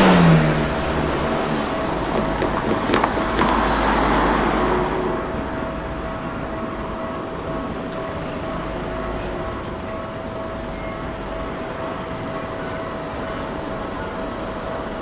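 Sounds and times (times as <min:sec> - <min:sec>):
vehicle passing over level crossing: 0:00.0 - 0:05.6
traffic noise: 0:00.0 - 0:15.0.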